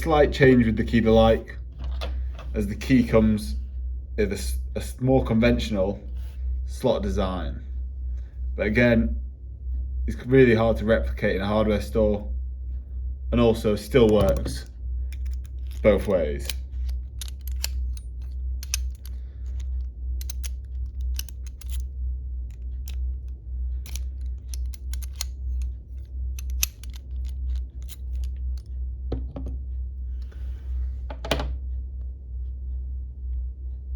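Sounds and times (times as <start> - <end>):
steady low hum: 0.0 - 33.9
padlock and key clicking: 14.0 - 21.9, 22.5 - 28.7.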